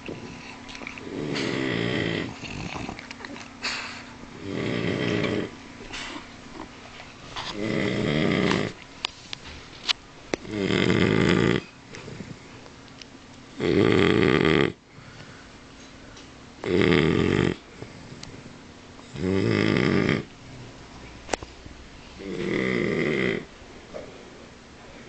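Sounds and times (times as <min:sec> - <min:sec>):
dog snoring loudly: 0:00.0 - 0:06.2, 0:07.4 - 0:08.8, 0:10.4 - 0:12.4, 0:13.5 - 0:14.8, 0:16.6 - 0:18.1, 0:19.0 - 0:20.3, 0:22.2 - 0:23.5.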